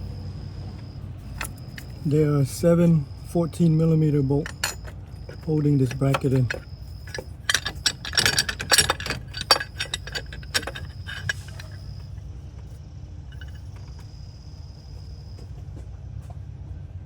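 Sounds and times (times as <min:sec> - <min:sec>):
steady low hum: 0:00.0 - 0:15.3
hand tools and bolts clinking: 0:01.2 - 0:12.2, 0:13.3 - 0:13.8.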